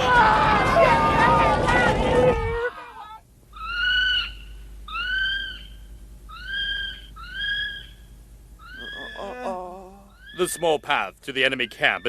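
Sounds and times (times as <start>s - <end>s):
drawn-out bird calls: 3.6s - 9.4s, 10.1s - 12.0s.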